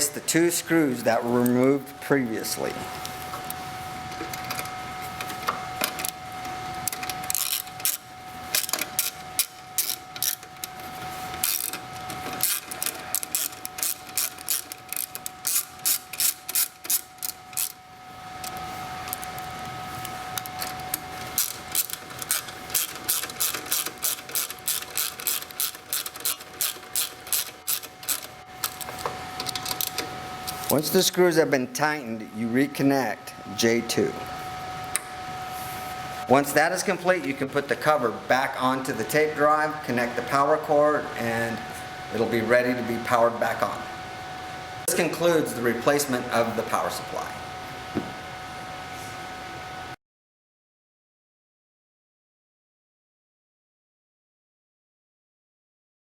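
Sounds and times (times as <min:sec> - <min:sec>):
ratcheting screwdriver clicking: 0:12.4 - 0:17.8, 0:21.4 - 0:30.6.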